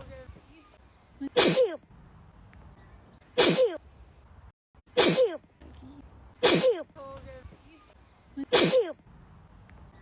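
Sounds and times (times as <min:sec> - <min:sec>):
woman sneezing: 0:01.3 - 0:01.8, 0:03.4 - 0:03.8, 0:05.0 - 0:05.4, 0:06.4 - 0:06.9, 0:08.5 - 0:09.0.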